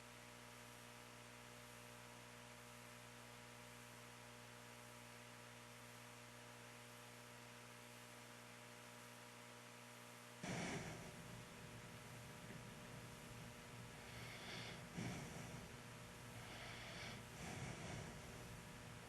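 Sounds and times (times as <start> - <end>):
electrical mains hum: 0.0 - 19.0
breath at microphone: 10.4 - 11.4, 14.0 - 18.6.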